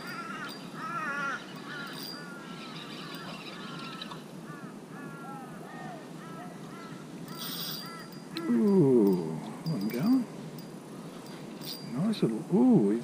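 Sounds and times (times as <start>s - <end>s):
birds calling short arching cries: 0.0s - 8.6s.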